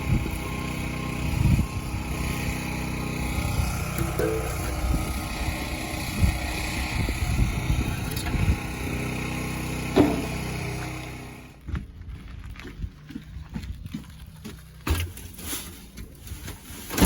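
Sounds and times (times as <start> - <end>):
engine running: 0.0 - 11.6
sharp knocks: 4.0 - 5.1, 10.0 - 10.4.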